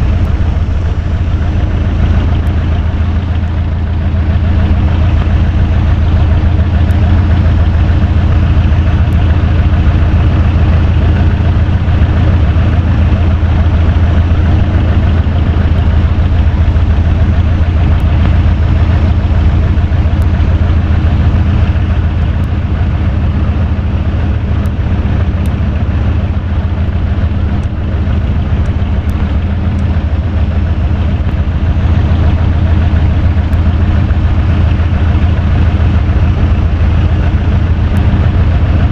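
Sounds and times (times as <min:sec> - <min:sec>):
rush of moving air: 0:00.0 - 0:22.6
electric fan motor hum: 0:00.0 - 0:38.9.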